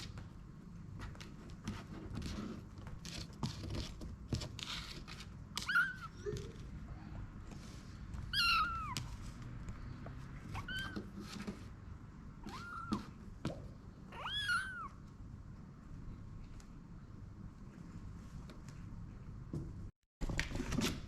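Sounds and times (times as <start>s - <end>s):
scratching and rustling: 0.9s - 11.9s
kitten meowing: 5.6s - 6.2s, 8.3s - 9.1s, 10.5s - 11.1s, 12.4s - 13.1s, 14.1s - 15.0s.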